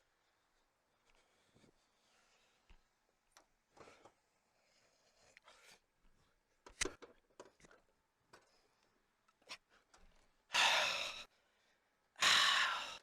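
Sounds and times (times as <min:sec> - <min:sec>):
faint clicks and handling noises: 0:00.6 - 0:10.4
person exhaling: 0:10.6 - 0:11.3, 0:12.2 - 0:13.0.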